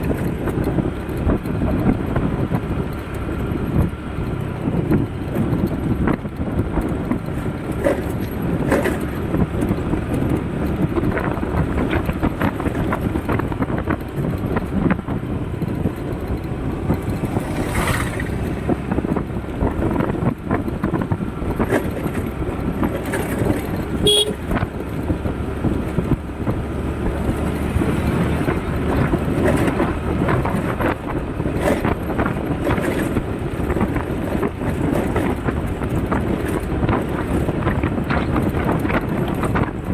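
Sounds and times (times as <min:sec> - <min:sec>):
vehicle rumbling on the move: 0:00.0 - 0:39.9
brief horn toot: 0:24.0 - 0:24.5.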